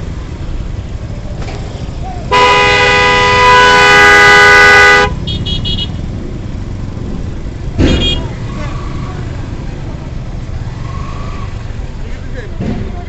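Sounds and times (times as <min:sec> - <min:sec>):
engines and road traffic rumble: 0:00.0 - 0:13.0
vehicle horn blast: 0:02.3 - 0:06.0.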